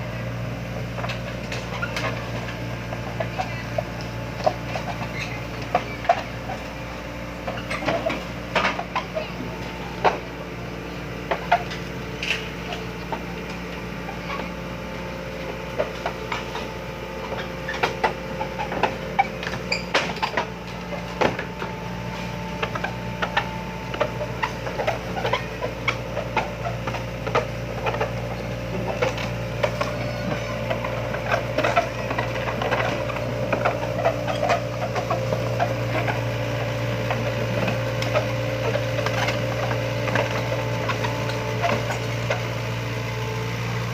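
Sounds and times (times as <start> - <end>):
excavator diesel engine running: 0.0 - 43.9
machine knocks and clanks: 15.7 - 21.8, 22.5 - 42.5.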